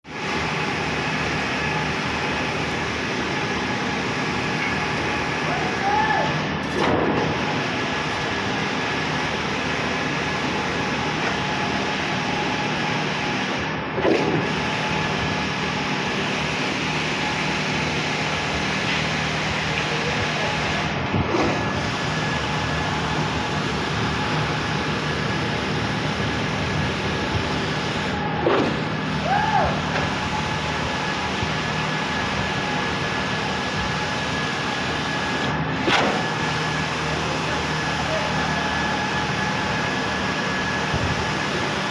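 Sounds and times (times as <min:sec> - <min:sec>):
heavy machinery droning: 0:09.8 - 0:41.9
heavy truck engine running: 0:13.2 - 0:41.9.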